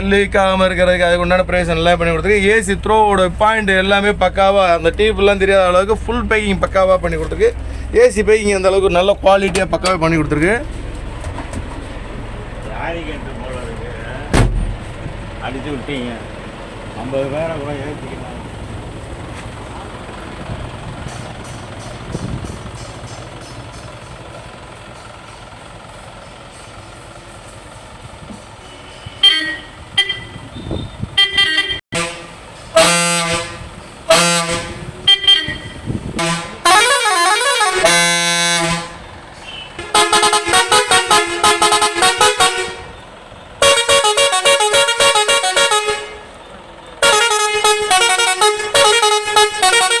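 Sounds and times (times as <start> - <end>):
multi-tone air horn: 28.6 - 43.0, 43.6 - 46.3, 47.0 - 50.0.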